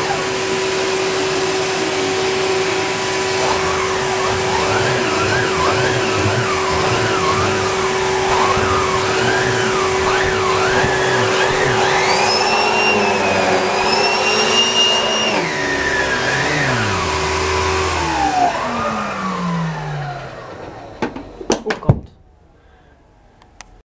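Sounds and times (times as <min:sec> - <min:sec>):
vacuum cleaner motor whine: 0:00.0 - 0:21.4.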